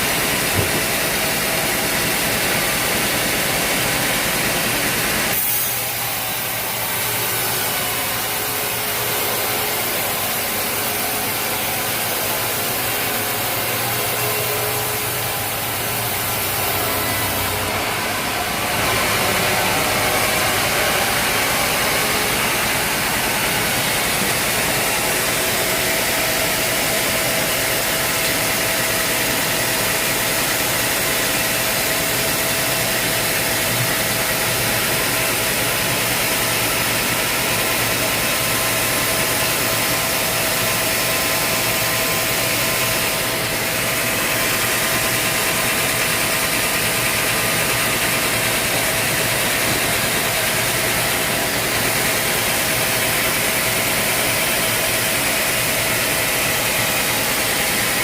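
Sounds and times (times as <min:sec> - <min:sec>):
steady whine: 0:00.0 - 0:37.4
sawmill machinery running: 0:00.0 - 0:58.0.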